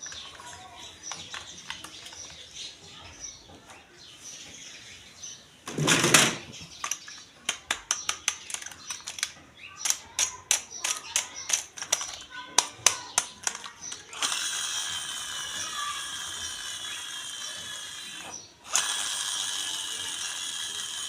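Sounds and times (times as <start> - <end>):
plastic clicks and taps: 0.0 - 2.4, 6.6 - 14.4.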